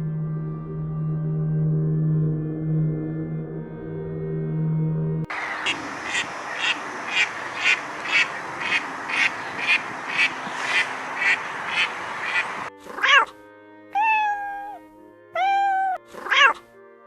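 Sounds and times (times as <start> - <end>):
steady background hiss: 5.3 - 12.7
animal calling: 5.3 - 13.3, 14.0 - 14.8, 15.4 - 16.6.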